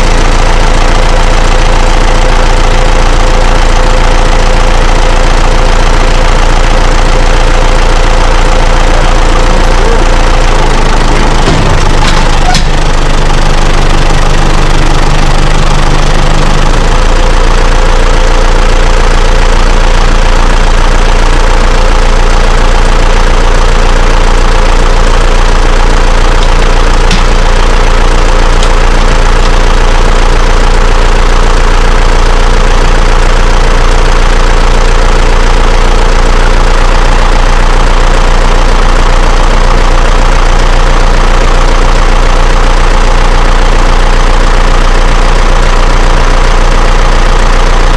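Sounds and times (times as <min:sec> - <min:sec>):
tractor diesel engine running: 0:00.0 - 0:47.9.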